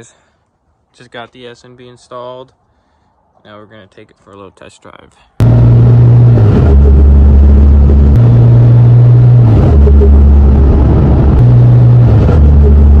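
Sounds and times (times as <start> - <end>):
diesel engine running loud: 5.4 - 13.0
turbo and intake noise: 5.4 - 13.0.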